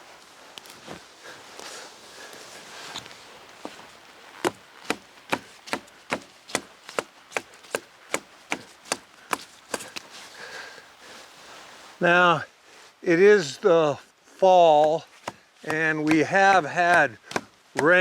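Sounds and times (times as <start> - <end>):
rustling: 0.0 - 12.0
knife chopping dry wood: 4.4 - 10.1, 14.8 - 18.0.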